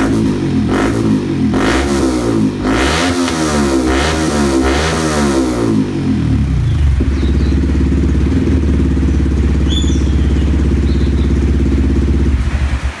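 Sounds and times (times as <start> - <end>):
motorcycle engine revving and idling: 0.0 - 13.0.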